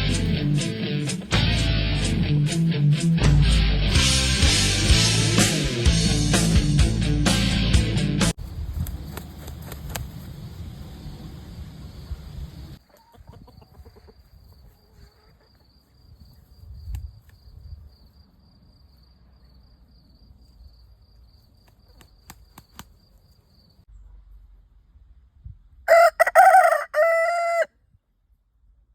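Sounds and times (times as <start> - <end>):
rooster crowing: 25.9 - 27.8.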